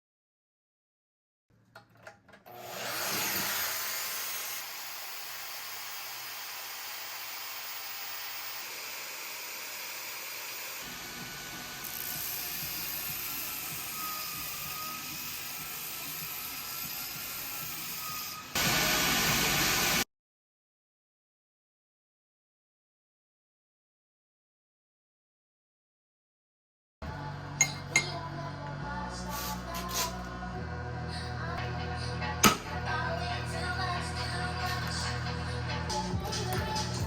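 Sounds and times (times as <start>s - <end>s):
plasma cutter hissing: 5.6s - 20.0s.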